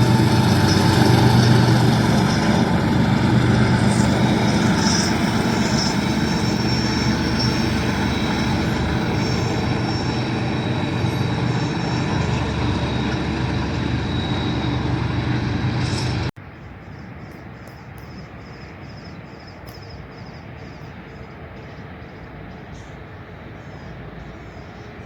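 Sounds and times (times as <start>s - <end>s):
diesel locomotive engine drone: 0.0s - 18.1s, 18.7s - 25.0s.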